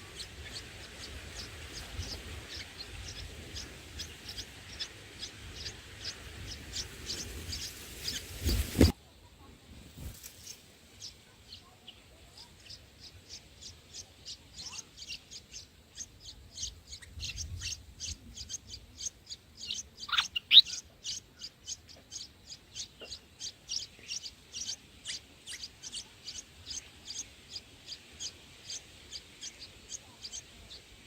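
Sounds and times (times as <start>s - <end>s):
bird chirping: 0.0s - 9.0s, 10.0s - 31.0s.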